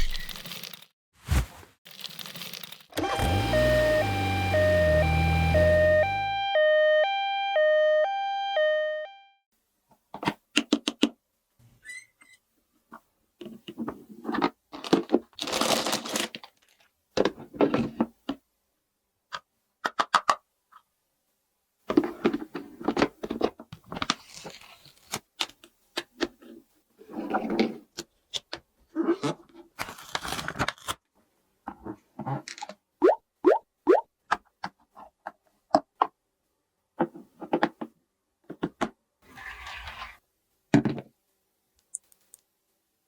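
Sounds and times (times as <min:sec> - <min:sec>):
packaging crinkling: 0:00.0 - 0:03.0, 0:14.8 - 0:16.9, 0:29.8 - 0:31.0.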